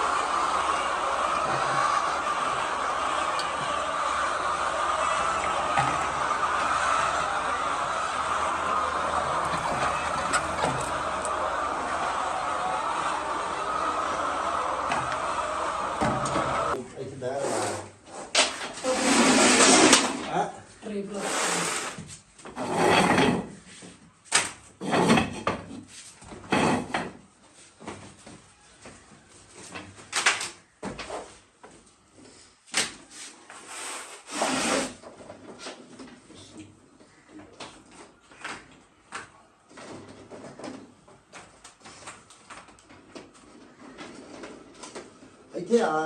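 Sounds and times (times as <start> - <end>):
objects knocking and clattering: 9.4 - 11.0, 24.8 - 27.3.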